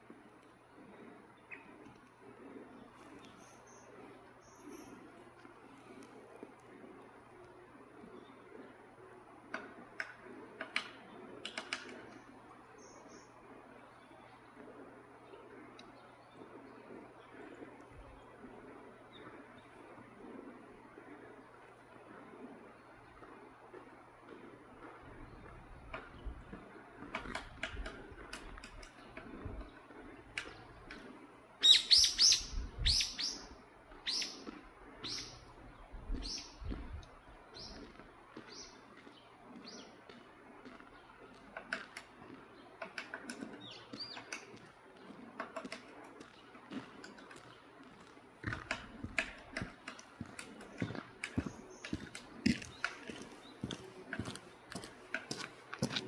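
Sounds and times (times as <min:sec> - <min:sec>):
woodpecker sharp high calls: 0:31.6 - 0:35.4.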